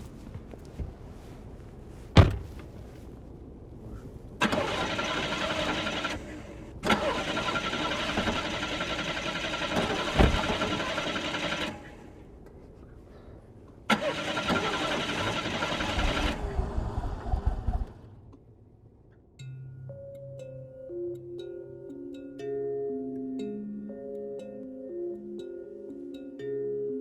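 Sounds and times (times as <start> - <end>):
car engine starting and running: 1.9 - 3.0, 4.4 - 12.2, 13.8 - 18.0
sharp thump: 2.2 - 2.8.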